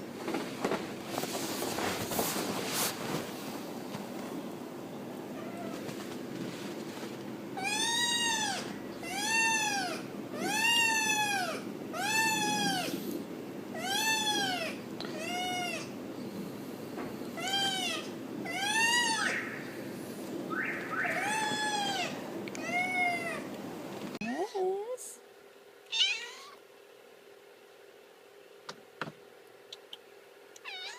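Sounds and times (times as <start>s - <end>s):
steady low hum: 0.0s - 30.9s
cat meowing: 7.6s - 12.9s, 13.8s - 15.9s, 17.4s - 19.3s, 21.1s - 23.5s, 25.9s - 26.6s, 30.6s - 30.9s.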